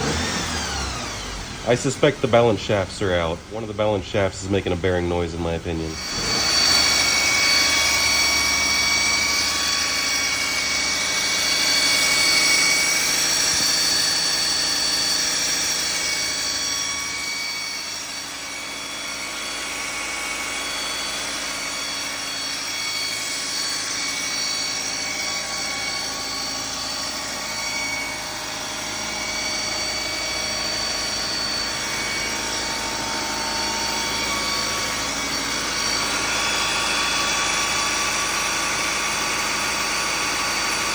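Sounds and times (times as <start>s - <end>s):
high-pitched whine: 0.0s - 40.9s.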